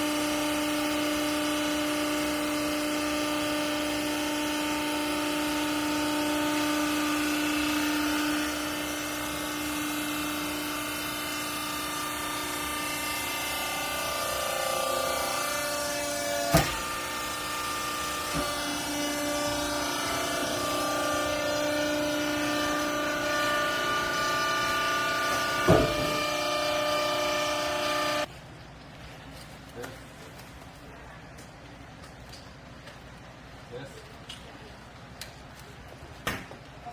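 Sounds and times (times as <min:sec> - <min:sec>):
hydraulic baler motor whine: 0:00.0 - 0:28.3.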